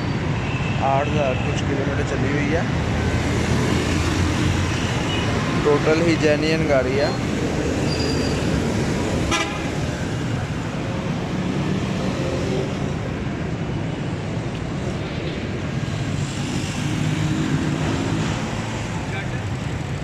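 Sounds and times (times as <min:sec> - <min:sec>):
road traffic: 0:00.0 - 0:20.0
vehicle horn toot: 0:09.3 - 0:09.7.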